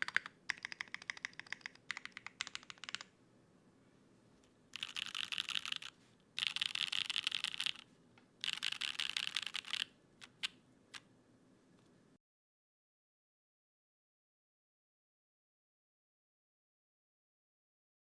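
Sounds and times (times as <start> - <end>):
mechanical keyboard typing: 0.0 - 3.1, 4.7 - 7.8, 8.4 - 11.0.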